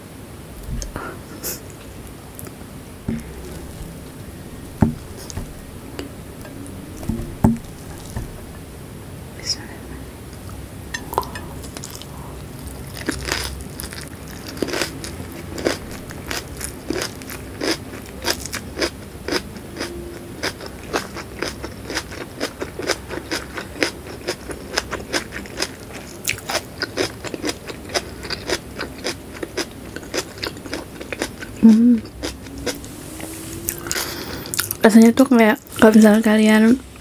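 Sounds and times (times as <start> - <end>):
wet mouth sounds: 0.6 - 1.6, 11.0 - 14.0
crunching and chewing: 11.0 - 32.8.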